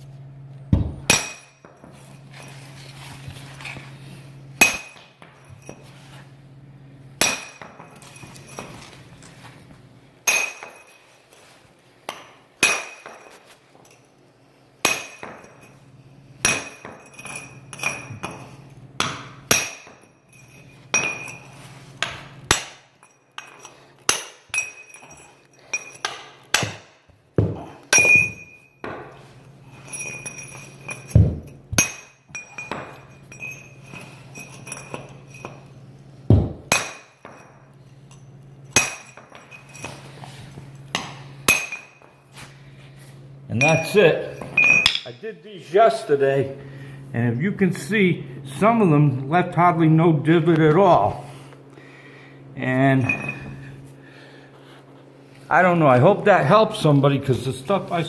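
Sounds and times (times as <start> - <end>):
sledgehammer striking steel chisel: 25.8 - 29.1, 36.3 - 37.6.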